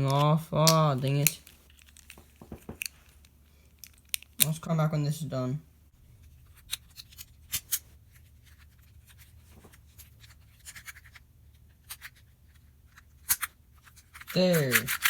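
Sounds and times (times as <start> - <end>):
plastic puzzle pieces clicking: 0.0 - 4.6, 13.2 - 15.0.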